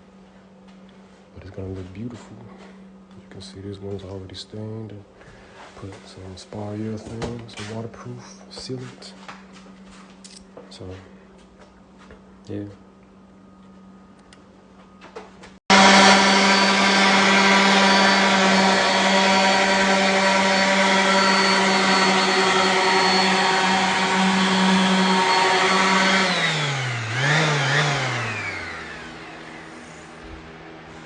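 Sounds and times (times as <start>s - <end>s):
electric power sander motor: 15.7s - 31.0s.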